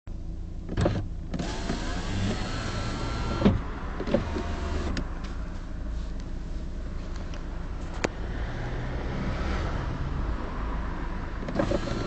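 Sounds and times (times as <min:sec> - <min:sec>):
power window motor whine: 0:00.7 - 0:05.0, 0:11.4 - 0:12.0.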